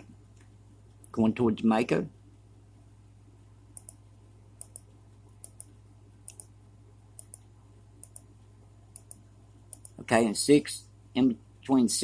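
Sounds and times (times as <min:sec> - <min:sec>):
steady low hum: 0:00.0 - 0:12.0
computer mouse clicking: 0:03.8 - 0:04.0, 0:04.6 - 0:06.5, 0:07.2 - 0:08.3, 0:08.9 - 0:10.0.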